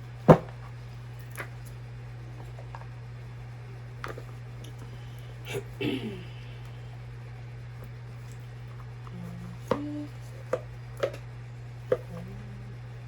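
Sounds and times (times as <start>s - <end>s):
low hum: 0.0s - 13.0s
cards clicking and tapping: 9.6s - 11.2s.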